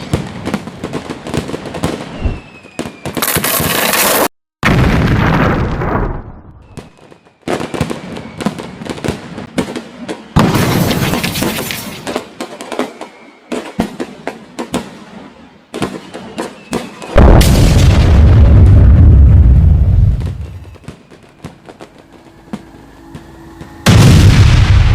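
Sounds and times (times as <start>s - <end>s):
explosion blasts with crackling pops: 0.0s - 24.9s
deep rumbling boom: 17.2s - 20.6s, 23.8s - 24.9s.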